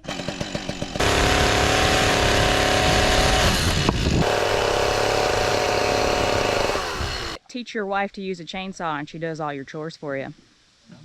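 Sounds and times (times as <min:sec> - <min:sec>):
chainsaw engine at high revs: 0:00.0 - 0:07.4.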